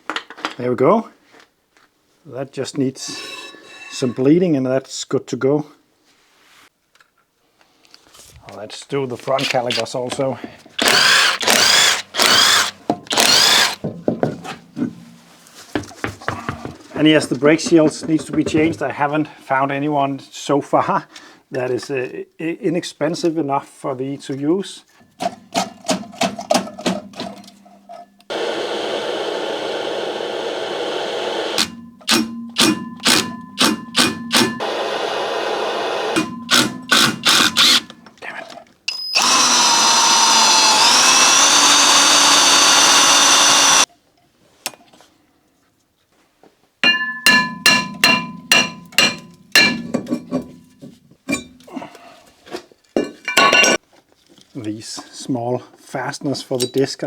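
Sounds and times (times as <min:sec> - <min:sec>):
power tool whining: 0:10.8 - 0:13.8, 0:28.3 - 0:38.0, 0:38.9 - 0:43.9.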